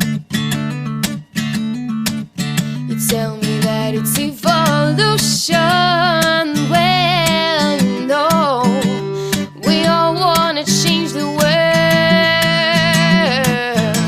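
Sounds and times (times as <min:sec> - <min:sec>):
strummed acoustic guitar: 0:00.0 - 0:14.0
person singing with vibrato: 0:02.8 - 0:14.0.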